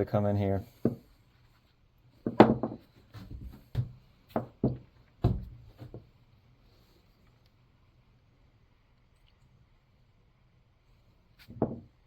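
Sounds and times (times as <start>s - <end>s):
tools knocking and clicking on workbench: 2.3s - 6.0s, 11.5s - 11.9s.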